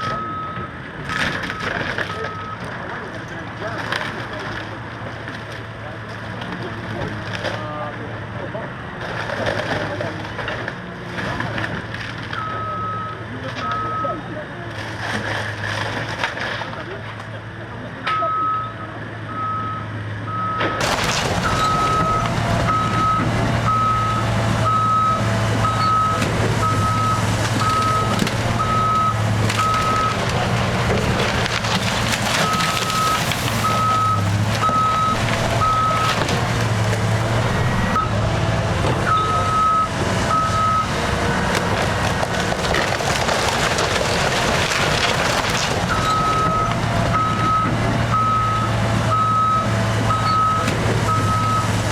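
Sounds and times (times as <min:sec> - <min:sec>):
debris crunching and crashing: 0:00.0 - 0:07.6, 0:14.7 - 0:17.3, 0:20.6 - 0:51.9
diesel engine running: 0:00.0 - 0:51.9
reversing alarm beeping: 0:21.4 - 0:30.2, 0:32.4 - 0:36.2, 0:45.9 - 0:51.7.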